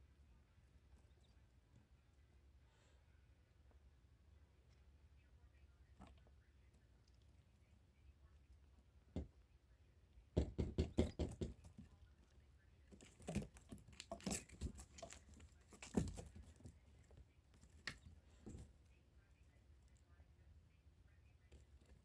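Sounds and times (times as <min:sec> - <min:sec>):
light taps and knocks: 0:10.4 - 0:12.0.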